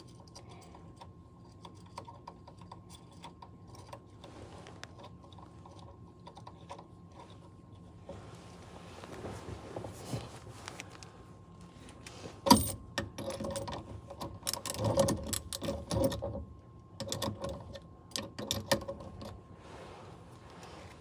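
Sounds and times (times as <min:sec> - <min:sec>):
metal tools clicking and clanking: 0:12.5 - 0:16.4.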